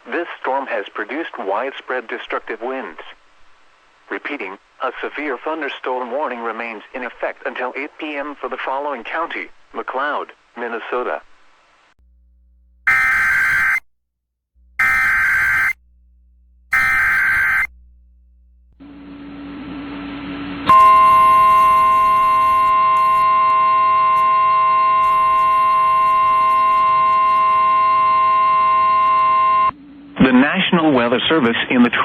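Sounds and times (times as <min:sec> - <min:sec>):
faint radio hiss: 0:00.0 - 0:12.0
steady warning alarm tone: 0:12.8 - 0:13.8, 0:14.7 - 0:16.0, 0:16.6 - 0:17.9, 0:20.7 - 0:29.8
digital data tone bursts: 0:12.9 - 0:13.8, 0:14.8 - 0:15.8, 0:16.7 - 0:17.7.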